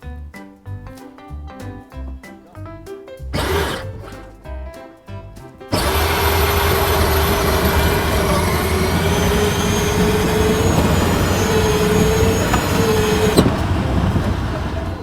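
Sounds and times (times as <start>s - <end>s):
electric motor whine: 3.4s - 4.2s, 5.7s - 15.0s
plastic wheels rumbling on pavement: 3.4s - 4.3s, 5.7s - 15.0s.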